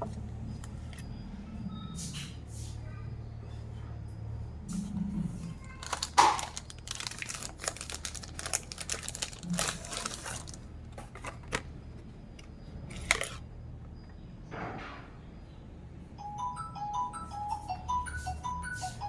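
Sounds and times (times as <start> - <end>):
plastic wrapper crinkling: 5.6 - 11.7.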